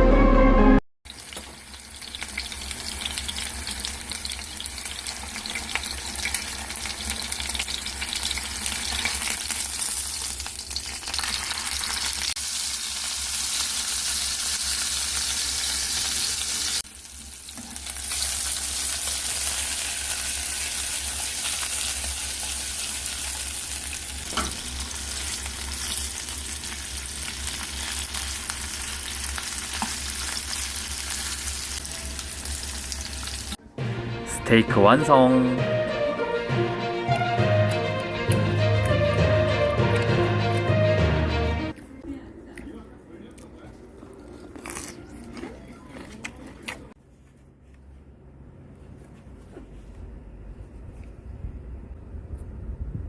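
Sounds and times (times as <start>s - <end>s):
steak sizzling in a pan: 1.1s - 33.6s.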